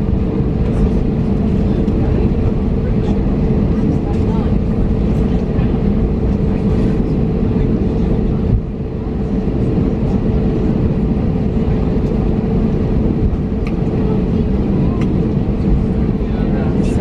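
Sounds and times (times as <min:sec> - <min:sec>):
aircraft cabin engine rumble: 0:00.0 - 0:17.0.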